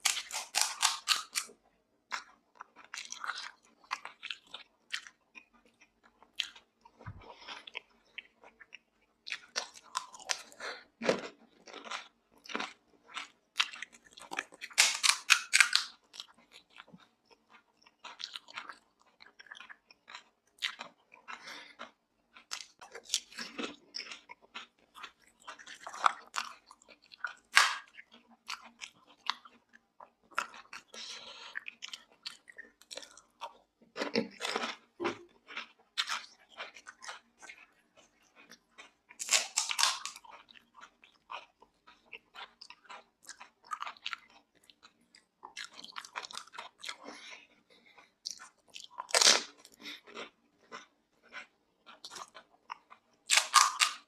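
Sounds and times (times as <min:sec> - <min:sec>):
crunching bites: 0:00.0 - 0:01.5, 0:09.4 - 0:16.3, 0:38.4 - 0:41.5, 0:48.3 - 0:54.0
wet chewing: 0:00.0 - 0:54.0.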